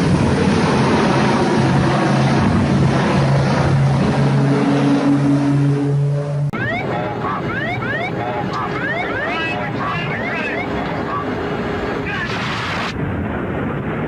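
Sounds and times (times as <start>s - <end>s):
rushing wind noise: 0.0s - 6.1s, 10.6s - 14.0s
engine drone: 0.0s - 14.0s.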